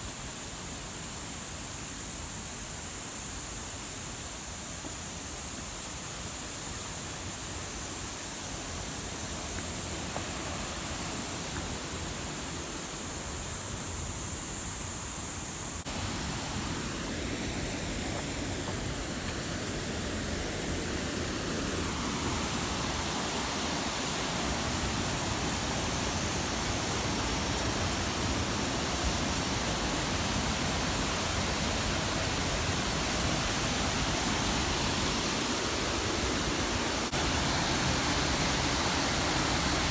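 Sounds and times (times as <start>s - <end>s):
waterfall rushing: 15.8s - 39.9s.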